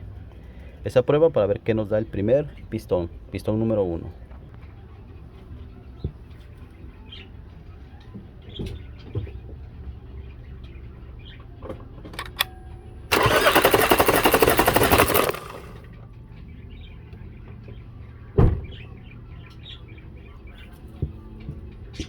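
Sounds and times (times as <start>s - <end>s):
engine cranking on starter: 12.2s - 12.5s, 13.1s - 15.9s.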